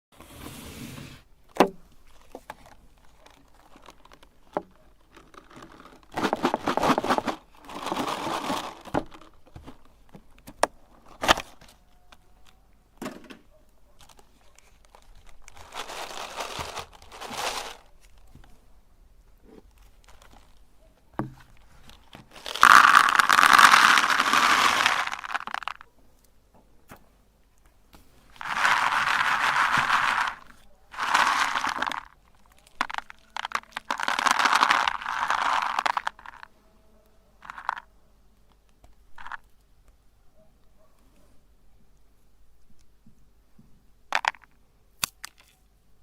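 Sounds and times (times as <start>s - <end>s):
meat grinder crunching candy: 22.4s - 25.8s, 28.4s - 36.4s.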